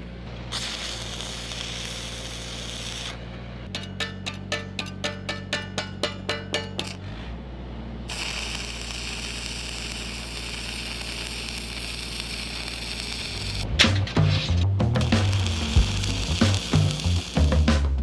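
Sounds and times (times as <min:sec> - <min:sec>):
welding machine engine hum: 0:00.0 - 0:03.6, 0:08.1 - 0:18.0
welding arc crackling and sizzling: 0:00.4 - 0:03.2, 0:08.1 - 0:18.0.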